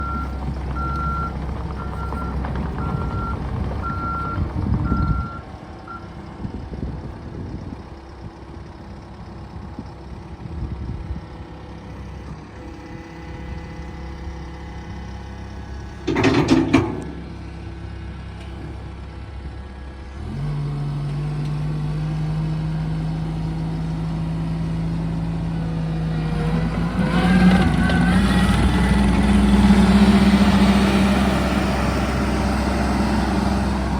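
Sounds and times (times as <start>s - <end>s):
skid steer engine running: 0.0s - 33.9s
loud clatter: 16.0s - 17.4s.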